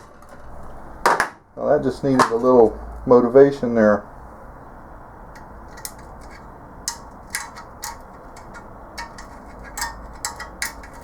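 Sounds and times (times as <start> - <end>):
sharp metallic clicks and clinks: 5.3 - 11.0.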